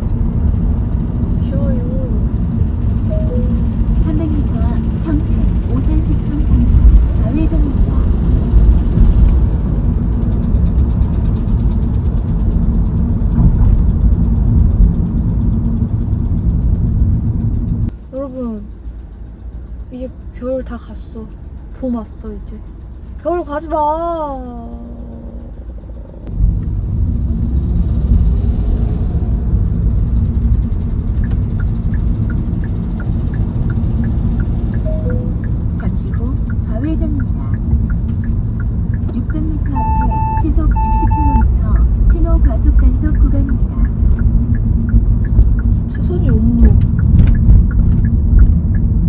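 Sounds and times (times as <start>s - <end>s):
road and engine rumble in car cabin: 0.0s - 49.0s
turn signal ticking: 29.2s - 49.0s.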